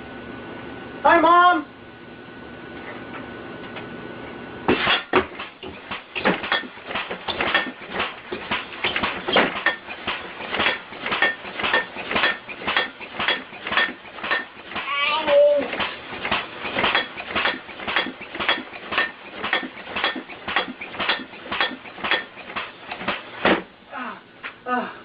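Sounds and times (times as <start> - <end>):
pots and pans clanging: 4.7 - 14.9, 15.7 - 23.7
low steady hum: 20.1 - 25.0.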